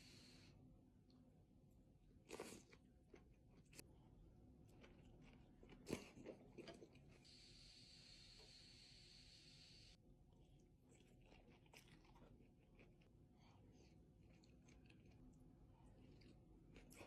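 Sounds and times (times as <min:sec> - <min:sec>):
soft chewing and clicking: 0:01.0 - 0:03.9, 0:04.6 - 0:07.3, 0:10.2 - 0:17.0.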